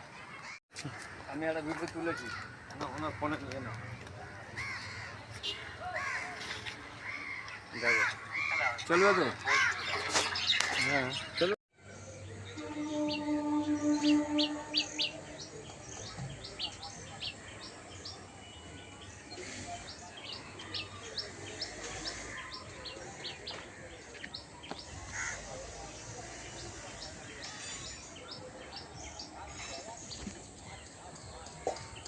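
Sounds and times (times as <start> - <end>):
outdoor background noise: 0.0 - 32.0
small birds chirping: 0.4 - 32.0.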